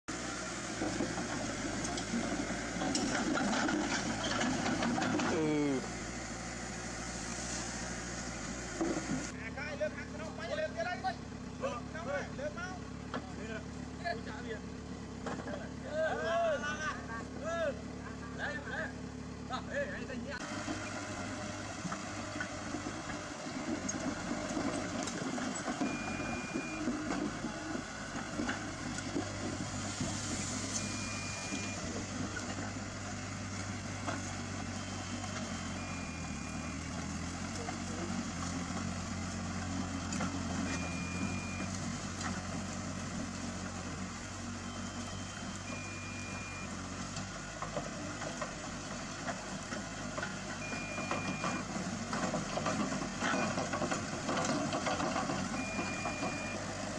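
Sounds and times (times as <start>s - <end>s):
heavy diesel engine running: 0.1s - 56.9s
short high beep: 25.9s - 26.8s, 30.8s - 31.8s.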